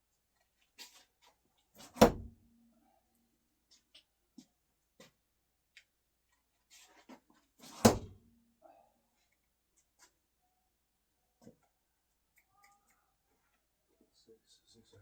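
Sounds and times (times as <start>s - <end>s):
screwdriver thudding into wood: 1.8s - 2.4s.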